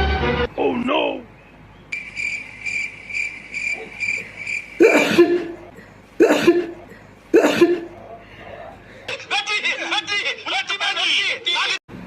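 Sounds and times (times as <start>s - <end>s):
fast high chirping: 1.9s - 5.5s
person sneezing: 4.8s - 7.9s.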